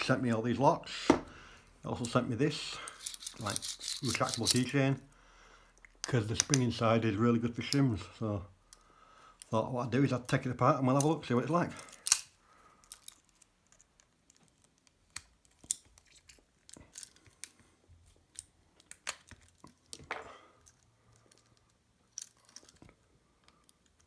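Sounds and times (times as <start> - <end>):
plastic keyring clicks and creaks: 2.8 - 5.1, 5.8 - 6.8, 10.4 - 24.0.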